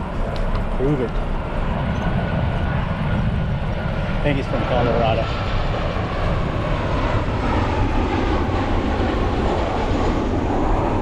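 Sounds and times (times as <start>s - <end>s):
jet airliner passing overhead: 0.0s - 11.0s.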